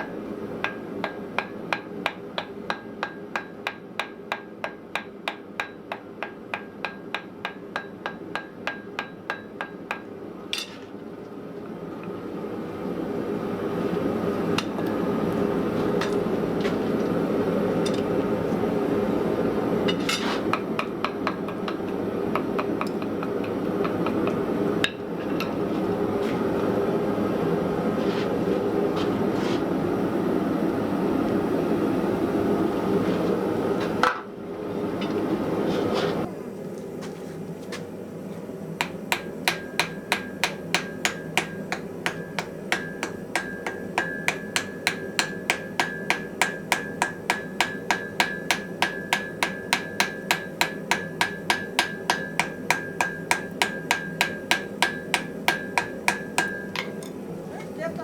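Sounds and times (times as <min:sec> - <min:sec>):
hammer blows on an anvil: 0:38.8 - 0:57.0.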